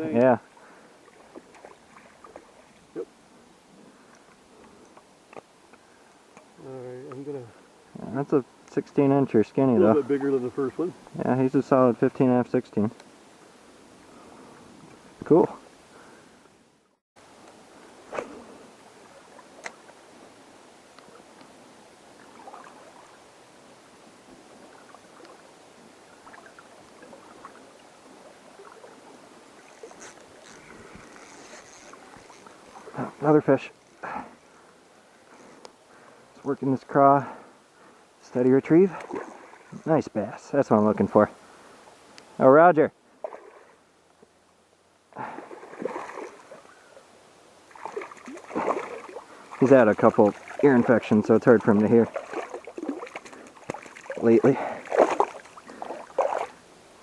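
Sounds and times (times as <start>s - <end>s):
river water lapping: 0.0s - 8.6s, 17.6s - 36.4s, 38.8s - 39.9s, 43.1s - 43.9s, 45.1s - 57.0s
water splashing from fish: 1.0s - 3.1s, 22.2s - 23.2s, 43.2s - 43.7s, 45.2s - 46.7s, 47.7s - 56.6s.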